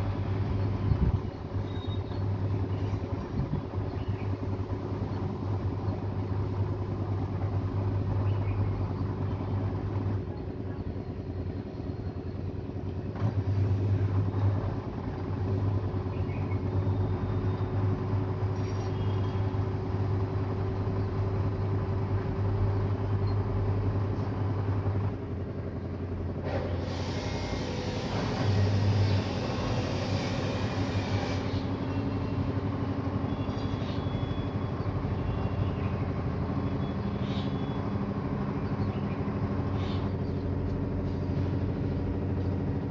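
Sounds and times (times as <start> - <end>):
washing machine spinning: 19.6 - 35.4.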